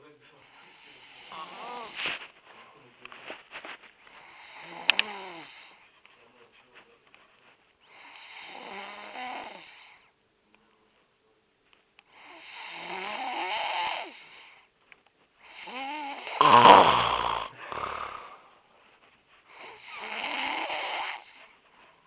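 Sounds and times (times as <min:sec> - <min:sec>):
man snoring heavily: 0:01.0 - 0:02.0, 0:12.4 - 0:14.2, 0:15.6 - 0:18.4, 0:19.8 - 0:21.3.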